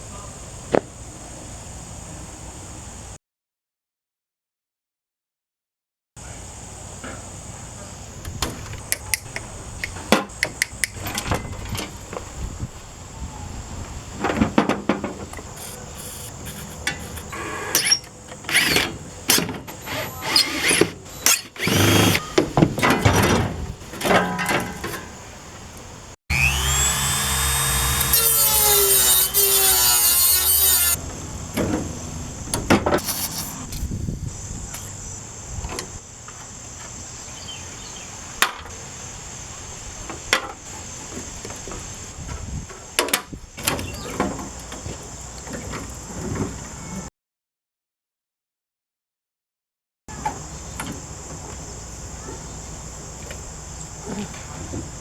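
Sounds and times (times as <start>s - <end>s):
metal parts clanking and scraping: 14.2s - 25.3s
power drill whining: 15.6s - 18.9s, 19.8s - 22.4s, 26.3s - 31.0s.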